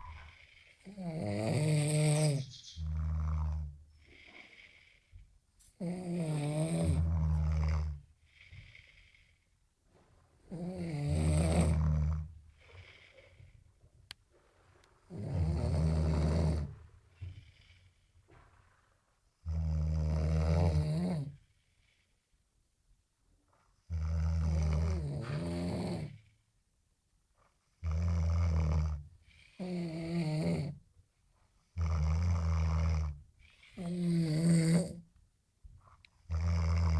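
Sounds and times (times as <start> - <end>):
quiet breathing: 0.0 - 20.1, 21.2 - 23.8, 33.3 - 36.7.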